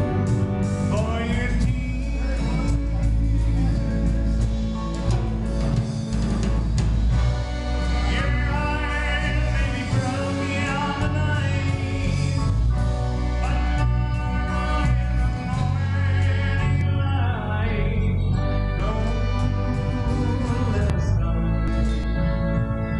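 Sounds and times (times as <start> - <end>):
live band playing: 0.0 - 22.9
strong bass line: 0.0 - 22.9
voices singing in harmony: 7.5 - 17.9.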